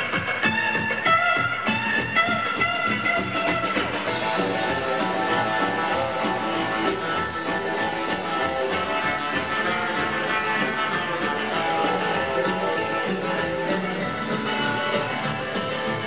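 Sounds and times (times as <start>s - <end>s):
electric guitar lead: 0.0s - 16.0s
rock and roll band playing: 0.0s - 16.0s.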